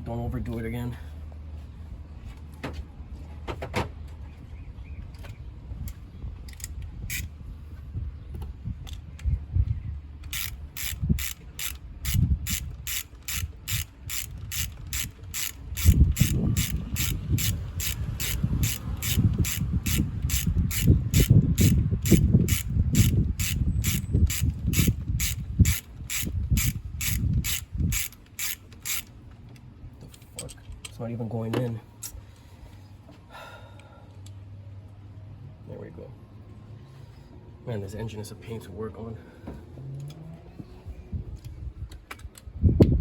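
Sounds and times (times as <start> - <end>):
socket ratchet clicking: 5.9 - 7.3, 10.2 - 29.6.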